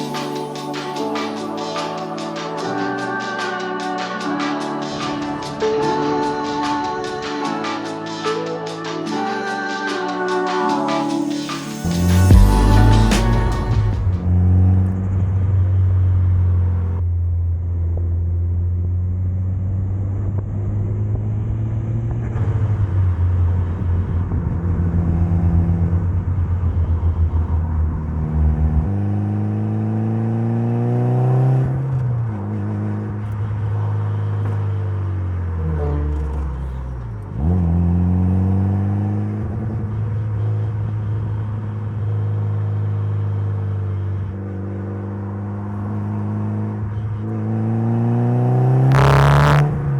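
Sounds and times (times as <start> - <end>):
car engine revving: 11.4 - 17.0, 18.9 - 49.9.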